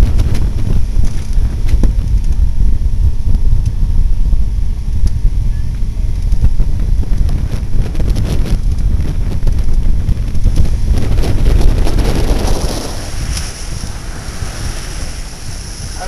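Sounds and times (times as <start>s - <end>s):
wind buffeting microphone: 0.0s - 16.0s
light crackles: 5.0s - 16.0s.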